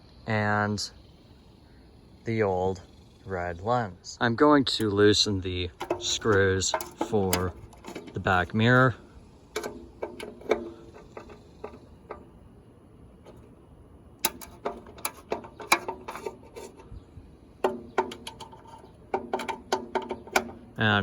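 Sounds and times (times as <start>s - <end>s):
screwdriver clicking on metal screws: 5.7s - 8.9s, 9.5s - 12.4s, 14.2s - 16.8s, 17.6s - 20.7s.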